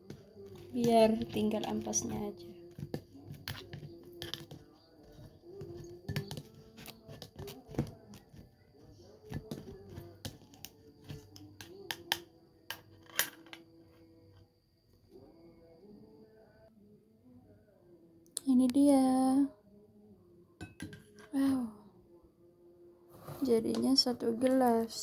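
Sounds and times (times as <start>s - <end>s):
utensils tapping strainer and bowl: 0.0s - 8.4s.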